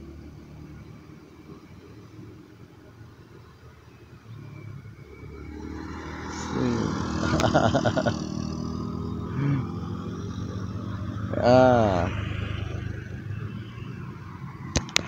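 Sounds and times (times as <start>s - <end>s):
vehicle engine passing by: 3.4s - 15.0s.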